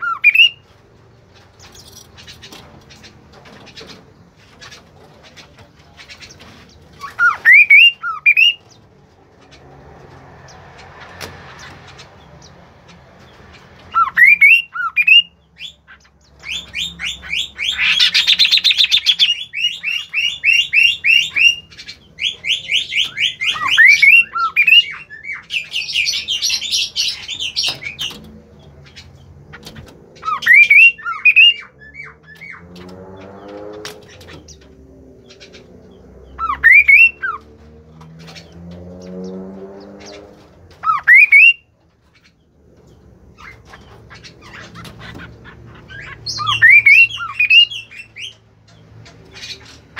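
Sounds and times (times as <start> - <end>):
songbird singing: 0.0 - 49.9
lower bird call: 36.3 - 37.4, 40.1 - 41.7.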